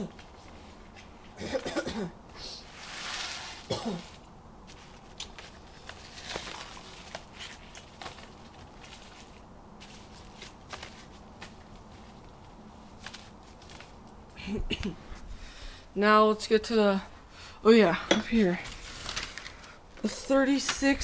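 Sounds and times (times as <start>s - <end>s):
person coughing: 1.4s - 2.2s, 3.7s - 4.2s, 14.4s - 15.2s
objects knocking and rustling: 3.6s - 14.1s.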